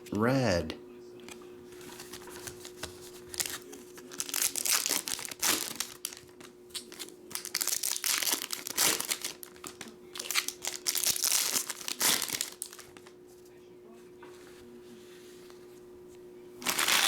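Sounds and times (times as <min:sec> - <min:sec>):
faint steady hum: 0:00.0 - 0:17.0
plastic wrappers crinkling: 0:01.8 - 0:13.2, 0:16.6 - 0:17.0.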